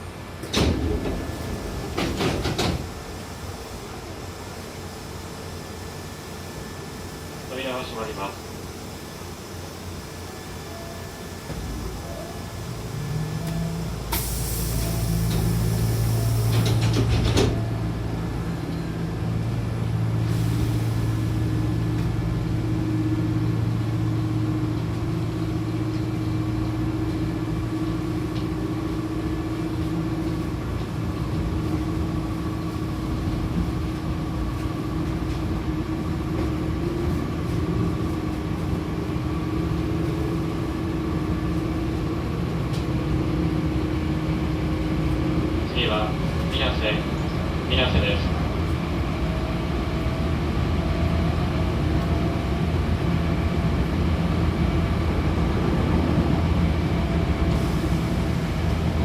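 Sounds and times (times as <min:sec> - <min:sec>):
train motor hum and running noise: 0:00.0 - 0:59.0
pneumatic train doors hissing: 0:13.7 - 0:17.6, 0:20.2 - 0:21.6.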